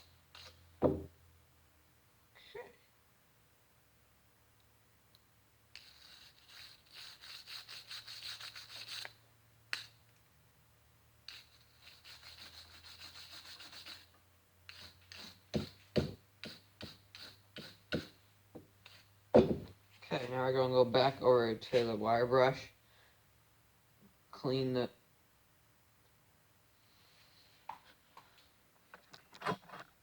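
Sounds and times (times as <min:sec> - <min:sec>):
scrubbing strokes on metal pliers: 0:05.7 - 0:10.0, 0:11.2 - 0:18.2.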